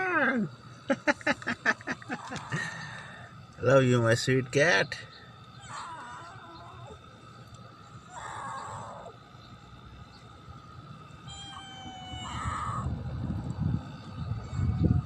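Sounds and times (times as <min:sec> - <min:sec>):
low rumbling noise: 0:06.9 - 0:15.0
cat meowing: 0:11.2 - 0:12.9.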